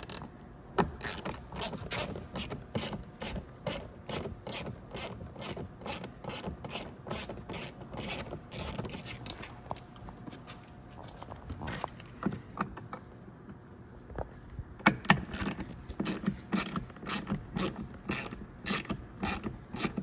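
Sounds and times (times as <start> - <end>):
ratchet clicking: 1.0 - 9.4, 15.4 - 20.0.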